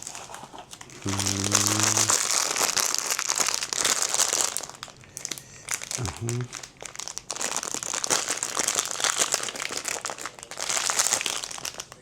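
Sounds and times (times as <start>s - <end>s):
plastic wrapping crinkling: 0.0s - 12.0s.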